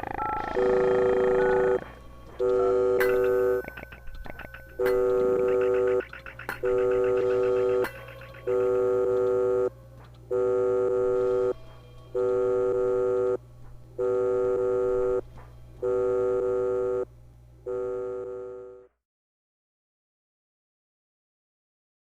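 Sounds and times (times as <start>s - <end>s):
electronic buzzing tone bursts: 0.0s - 3.8s, 4.7s - 9.7s, 10.3s - 13.4s, 14.0s - 15.2s, 15.8s - 18.9s.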